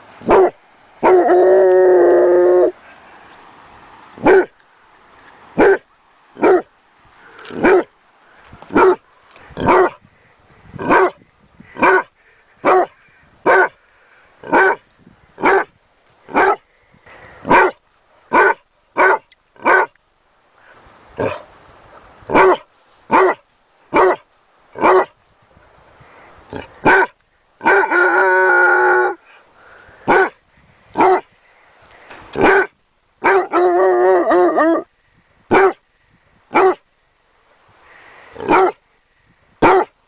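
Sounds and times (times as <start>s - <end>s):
dog barking: 0.3s - 1.2s, 4.2s - 4.5s, 5.6s - 5.8s, 6.4s - 6.7s, 7.6s - 7.9s, 8.7s - 9.0s, 9.6s - 10.0s, 10.8s - 11.2s, 11.8s - 12.9s, 13.5s - 13.8s, 14.5s - 14.8s, 15.4s - 15.7s, 16.3s - 16.6s, 17.5s - 19.9s, 22.3s - 24.2s, 24.8s - 25.1s, 26.8s - 28.0s, 30.1s - 30.4s, 31.0s - 31.3s, 32.4s - 33.6s, 35.5s - 35.8s, 36.5s - 36.8s, 38.4s - 38.8s, 39.6s - 40.0s.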